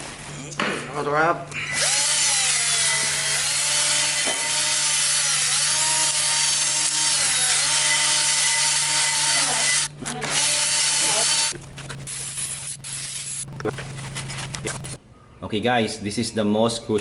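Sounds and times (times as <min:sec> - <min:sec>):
electric power tool scrubbing: 0:05.4 - 0:15.0.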